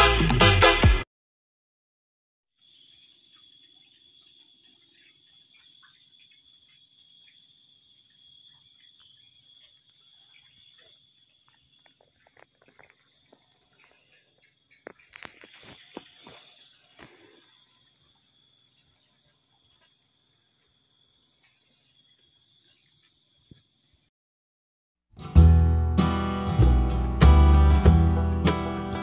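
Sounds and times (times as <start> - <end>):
high-pitched insects chirring: 2.6 - 23.9.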